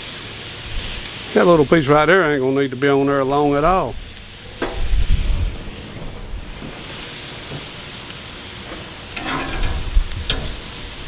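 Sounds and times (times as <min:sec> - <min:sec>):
steak sizzling on a grill: 0:00.0 - 0:11.0
wind buffeting microphone: 0:03.2 - 0:06.9, 0:09.5 - 0:11.0.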